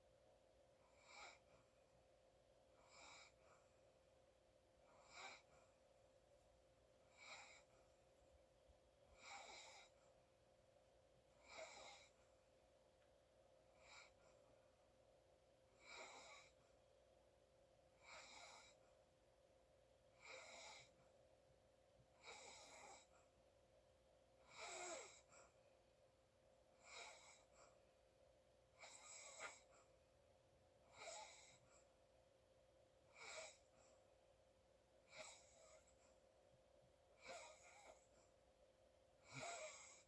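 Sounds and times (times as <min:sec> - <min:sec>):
faint steady hum: 0:00.0 - 0:40.0
person snoring softly: 0:00.8 - 0:01.6, 0:02.7 - 0:03.7, 0:04.8 - 0:05.8, 0:07.1 - 0:07.8, 0:09.1 - 0:10.0, 0:11.4 - 0:12.2, 0:13.7 - 0:14.4, 0:15.8 - 0:16.6, 0:18.0 - 0:18.8, 0:20.1 - 0:21.0, 0:22.2 - 0:23.2, 0:24.4 - 0:25.6, 0:26.8 - 0:27.8, 0:28.8 - 0:29.8, 0:30.9 - 0:31.8, 0:33.1 - 0:34.0, 0:35.0 - 0:36.0, 0:37.2 - 0:38.2, 0:39.2 - 0:40.0.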